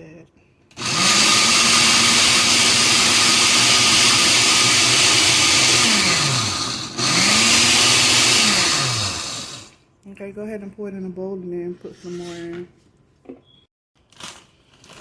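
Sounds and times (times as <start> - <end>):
blender motor grinding: 0.7 - 9.7.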